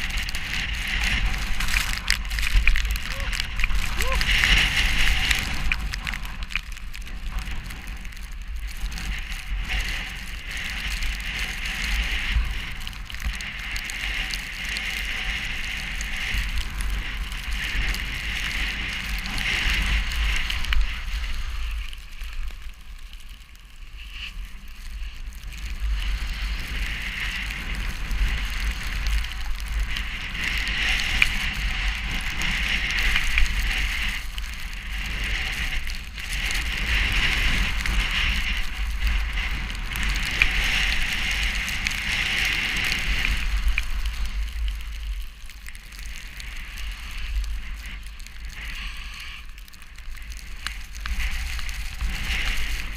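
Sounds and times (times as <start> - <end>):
wind buffeting microphone: 0.0 - 23.7
gusting wind hiss: 0.0 - 52.9.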